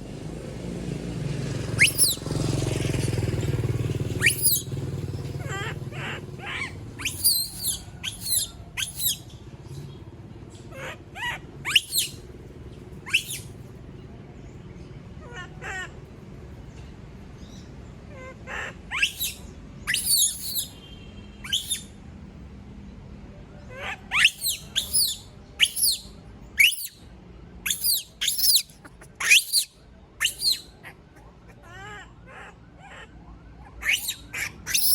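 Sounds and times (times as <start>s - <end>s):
monkey screaming: 1.7s - 2.3s, 4.2s - 9.3s, 10.7s - 12.3s, 13.0s - 13.5s, 15.2s - 16.0s, 18.1s - 20.8s, 21.4s - 22.0s, 23.6s - 27.0s, 27.6s - 34.9s.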